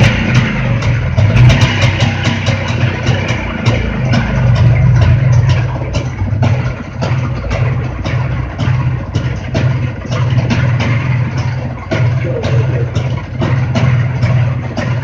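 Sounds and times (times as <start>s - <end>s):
motorcycle engine running: 0.0s - 15.0s
sharp engine clicks: 0.0s - 15.0s.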